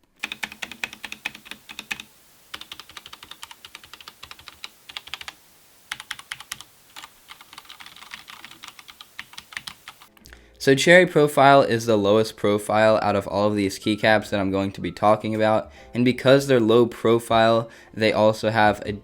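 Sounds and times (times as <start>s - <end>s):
mechanical keyboard typing: 0.0s - 10.1s.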